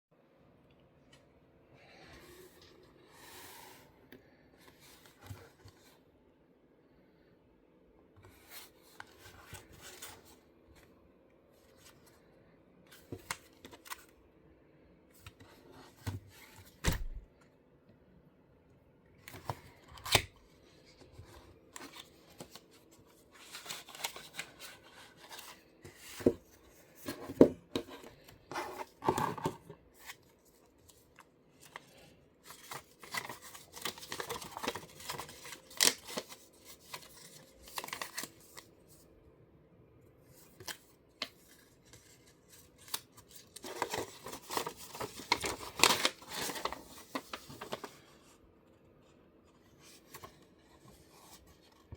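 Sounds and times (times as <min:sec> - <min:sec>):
cardboard packaging rustling: 0:21.0 - 0:38.7, 0:40.5 - 0:48.1.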